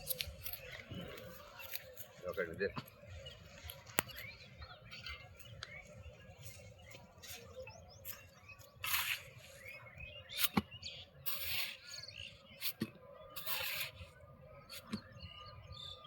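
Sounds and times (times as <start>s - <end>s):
faint small bird chirps: 3.2s - 16.0s.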